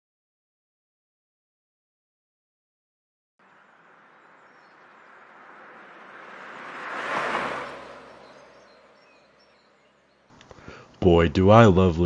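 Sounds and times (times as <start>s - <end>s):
vehicle passing: 3.4s - 10.4s.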